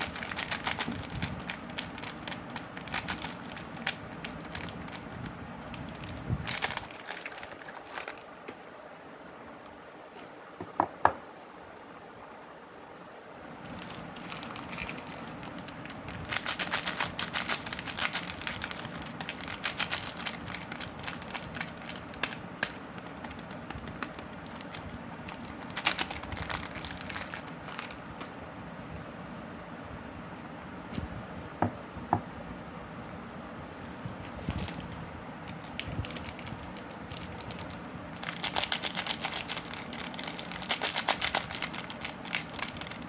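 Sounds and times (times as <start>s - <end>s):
dry soap crushing and crackling: 0.0s - 8.2s, 13.6s - 28.3s, 34.3s - 43.0s.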